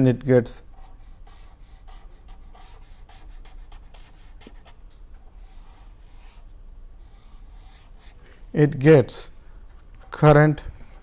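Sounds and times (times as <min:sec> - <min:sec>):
low steady hum: 0:00.0 - 0:11.0
pen scratching on paper: 0:00.7 - 0:08.2.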